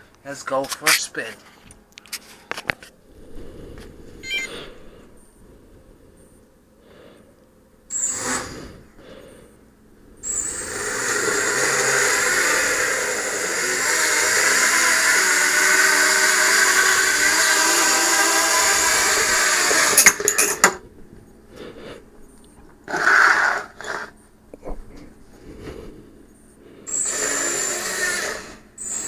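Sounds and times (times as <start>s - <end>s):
short bursts of noise: 4.2s - 4.8s
drone propellers whirring: 4.2s - 5.4s, 7.9s - 8.9s, 10.2s - 20.4s, 26.8s - 29.0s.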